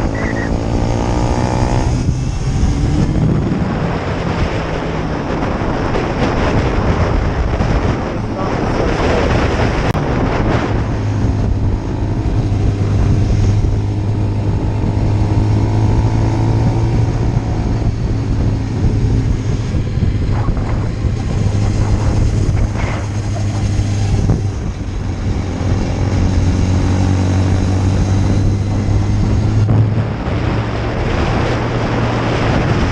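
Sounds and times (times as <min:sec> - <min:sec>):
motorcycle engine drone: 0:00.0 - 0:32.9
wind buffeting microphone: 0:00.0 - 0:32.9.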